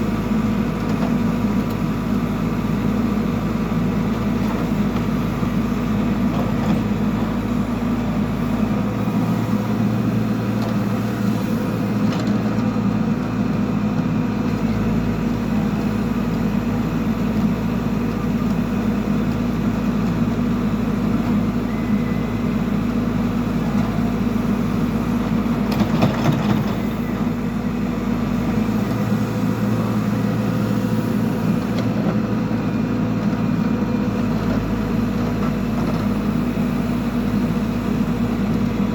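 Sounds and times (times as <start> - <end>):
diesel engine droning: 0.0 - 38.9.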